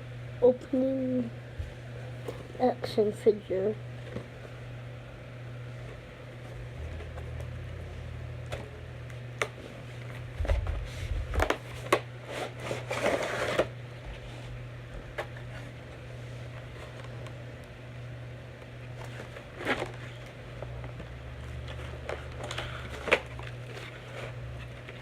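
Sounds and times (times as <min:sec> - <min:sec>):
steady low hum: 0:00.0 - 0:25.0
packaging crinkling and clicking: 0:19.0 - 0:25.0.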